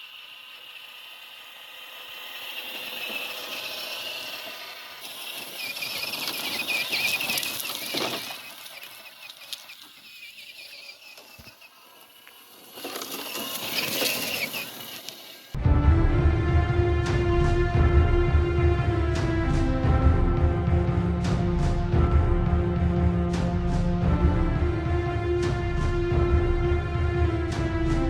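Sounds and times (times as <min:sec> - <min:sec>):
tires crunching on rough ground: 0:02.4 - 0:15.6.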